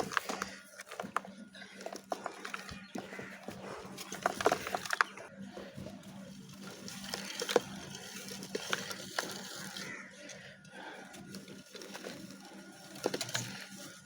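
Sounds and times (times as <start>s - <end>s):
dry clay lumps crumbling: 0.0s - 14.0s.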